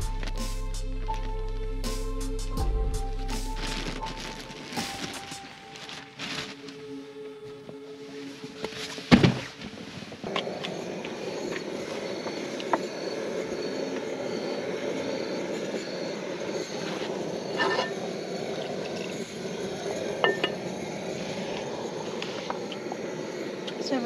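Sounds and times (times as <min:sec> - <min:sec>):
pots and utensils clinking: 0:17.6 - 0:18.0, 0:20.2 - 0:20.6.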